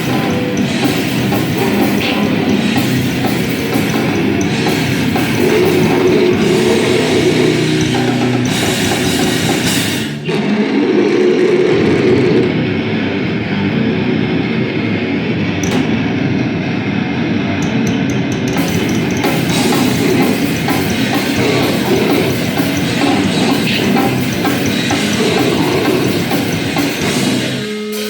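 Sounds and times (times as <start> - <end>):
harsh distorted noise: 0.0 - 28.0.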